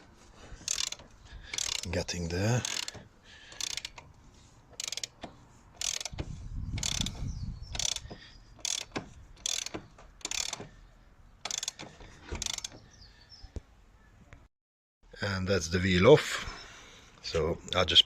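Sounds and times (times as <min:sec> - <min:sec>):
ratchet wrench clicking: 0:00.6 - 0:01.9, 0:02.6 - 0:04.1, 0:04.8 - 0:10.7, 0:11.4 - 0:12.8.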